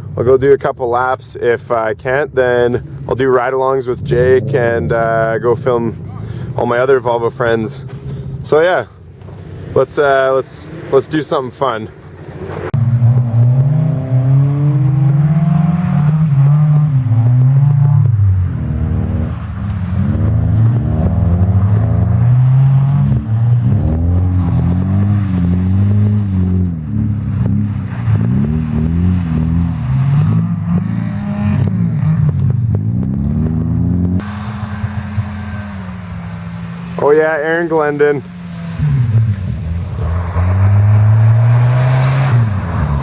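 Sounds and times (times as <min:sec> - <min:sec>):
car engine revving hard: 0:12.2 - 0:43.0.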